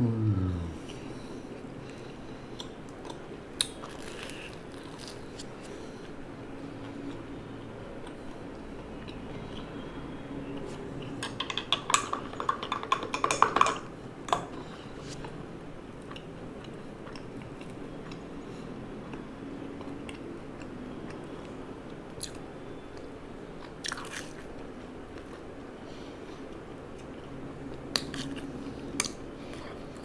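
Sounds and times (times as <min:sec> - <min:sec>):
low background hum: 0:00.0 - 0:30.0
crunchy chewing: 0:01.9 - 0:06.1.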